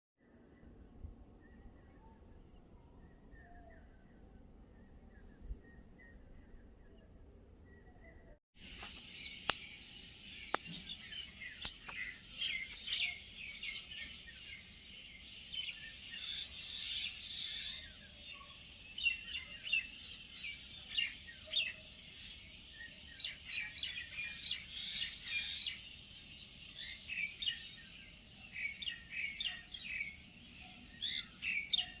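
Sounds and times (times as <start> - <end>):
birds chirping in chorus: 7.7 - 32.0.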